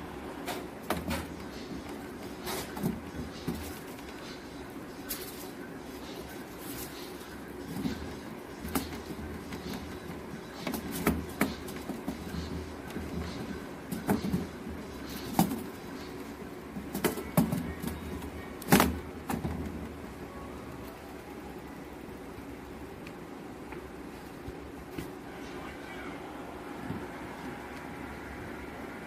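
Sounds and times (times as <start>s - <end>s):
low steady hum: 0.0s - 29.0s.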